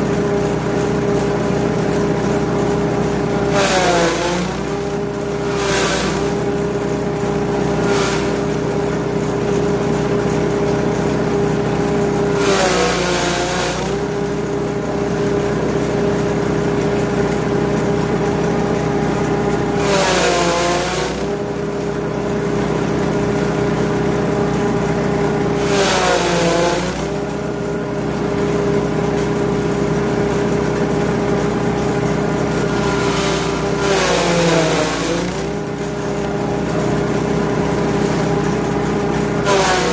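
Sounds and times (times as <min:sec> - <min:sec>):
grass chopper engine running: 0:00.0 - 0:39.9
blades chopping material: 0:03.5 - 0:06.4, 0:07.8 - 0:08.6, 0:12.4 - 0:14.1, 0:19.7 - 0:21.4, 0:25.6 - 0:27.4, 0:32.6 - 0:35.7, 0:39.5 - 0:39.9.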